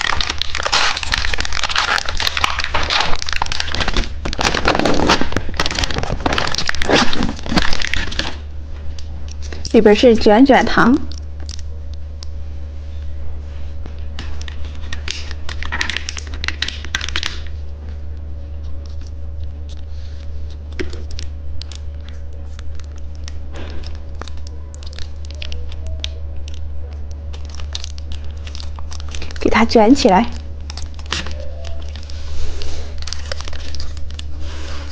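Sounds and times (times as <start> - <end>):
plastic packaging crinkling: 0.0 - 12.3, 13.7 - 34.9
low steady hum: 0.0 - 34.9.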